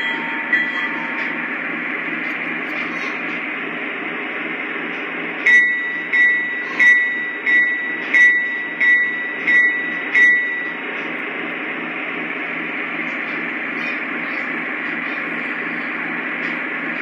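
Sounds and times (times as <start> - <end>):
locomotive bell ringing: 0.0 - 1.5, 5.4 - 11.1
diesel engine rumble through small speaker: 0.0 - 17.0.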